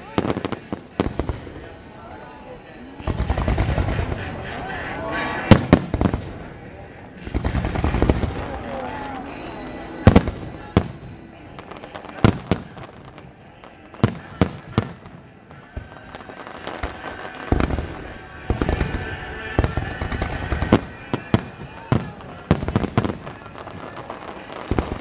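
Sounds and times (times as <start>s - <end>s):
fireworks bursting with sharp bangs: 0.0s - 25.0s.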